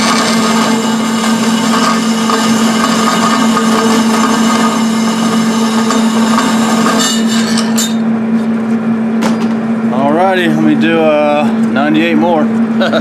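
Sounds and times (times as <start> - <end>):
bandsaw motor hum: 0.0 - 8.7.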